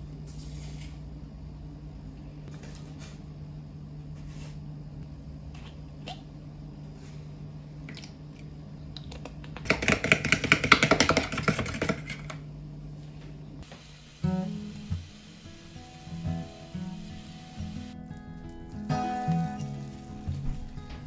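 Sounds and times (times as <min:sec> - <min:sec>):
steady low hum: 0:00.0 - 0:10.5, 0:11.2 - 0:21.0.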